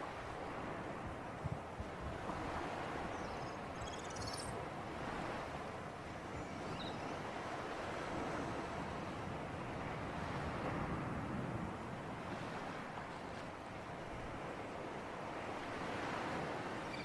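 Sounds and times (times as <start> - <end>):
waves washing: 0.0 - 3.8, 4.5 - 17.0
faint high chirps: 3.3 - 4.6.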